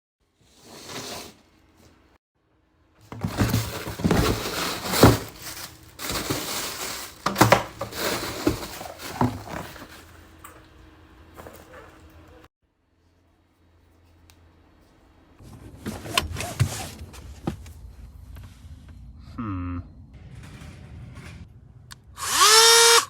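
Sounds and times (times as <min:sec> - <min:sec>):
scraping and crunching: 0:03.0 - 0:10.3.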